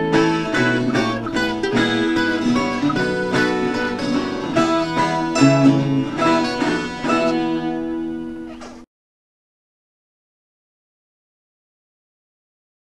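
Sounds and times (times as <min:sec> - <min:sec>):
acoustic guitar picking and strumming: 0:00.0 - 0:08.8.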